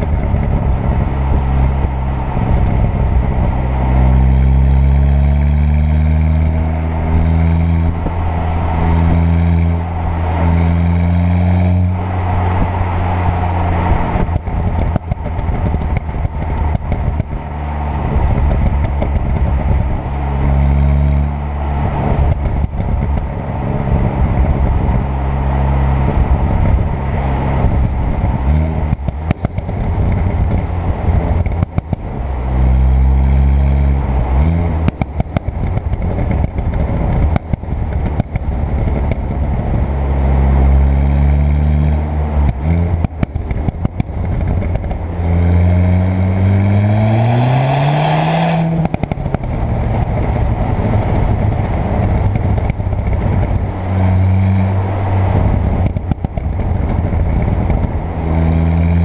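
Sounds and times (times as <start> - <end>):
exhaust crackles and bangs: 11.7 - 25.2, 25.9 - 33.4, 34.0 - 40.2, 42.3 - 47.2, 48.6 - 59.0
car engine revving hard: 45.0 - 56.2.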